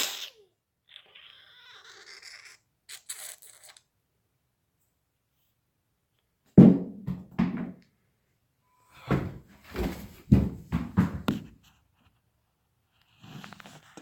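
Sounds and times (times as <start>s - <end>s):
dull knocks on hard surface: 6.6s - 7.8s, 9.1s - 11.5s.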